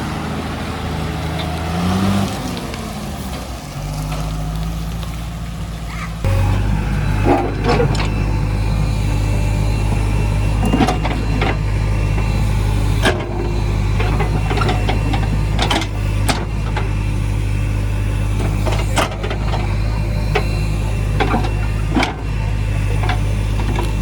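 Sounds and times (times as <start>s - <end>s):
diesel engine running: 0.0s - 24.0s
metallic clanks and knocks: 12.9s - 17.0s.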